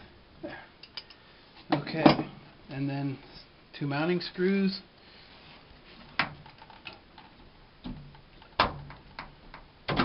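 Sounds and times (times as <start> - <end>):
sharp clicks and knocks: 6.1 - 10.0.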